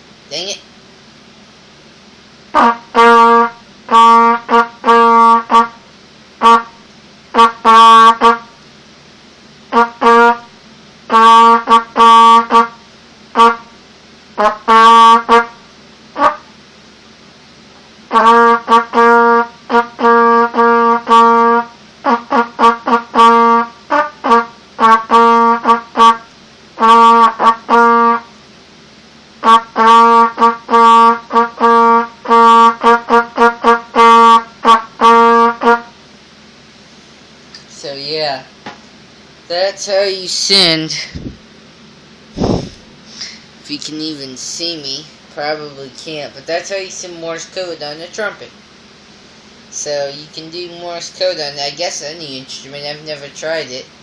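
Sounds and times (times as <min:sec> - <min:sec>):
trumpet playing morse code: 0:02.5 - 0:05.8, 0:06.4 - 0:08.5, 0:09.7 - 0:10.5, 0:11.1 - 0:13.7, 0:14.4 - 0:15.6, 0:16.2 - 0:16.4, 0:18.1 - 0:28.3, 0:29.4 - 0:36.0.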